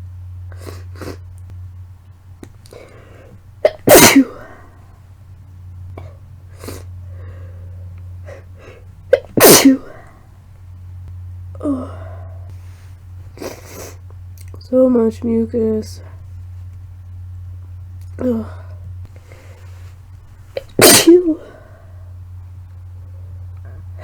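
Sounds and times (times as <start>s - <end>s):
person breathing: 2.7s - 3.4s, 6.0s - 8.9s, 11.6s - 14.0s, 18.2s - 20.0s
wet congested sneezes: 3.6s - 4.6s, 9.1s - 10.1s, 20.6s - 21.6s.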